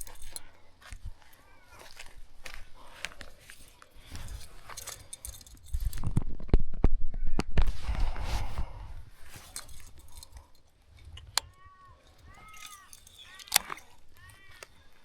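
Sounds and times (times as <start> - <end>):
handling noise on microphone: 0.0 - 6.8, 7.4 - 15.0
sharp clicks: 9.5 - 15.0
bird calling: 11.3 - 15.0.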